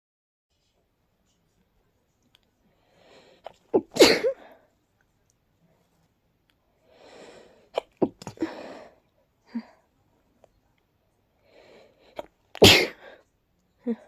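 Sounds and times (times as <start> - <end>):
person sneezing: 3.5 - 4.4, 7.8 - 8.6, 12.6 - 13.1.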